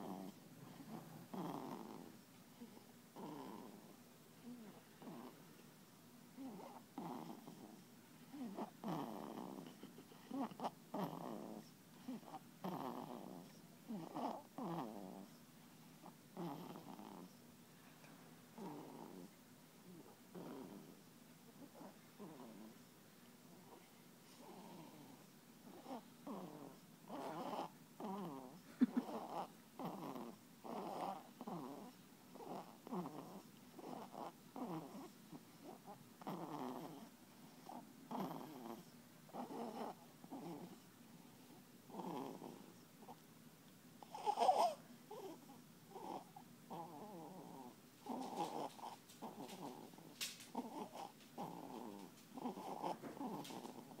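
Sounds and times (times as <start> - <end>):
baby snoring: 0.0 - 3.9, 4.5 - 5.4, 6.4 - 15.4, 16.3 - 17.4, 18.6 - 21.0, 21.6 - 22.7, 23.6 - 40.8, 41.9 - 43.2, 44.0 - 54.0
baby snorting: 24.4 - 40.8, 44.0 - 54.0.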